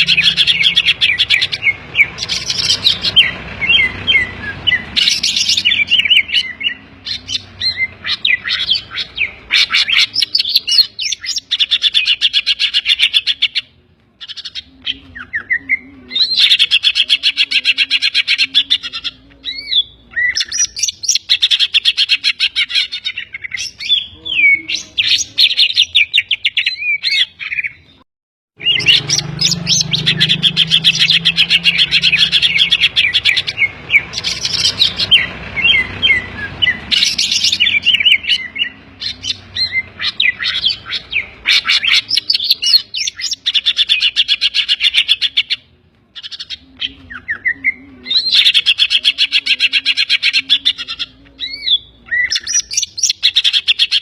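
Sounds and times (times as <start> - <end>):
bird singing rapid chirps and trills: 0.0 - 28.0, 28.6 - 54.0.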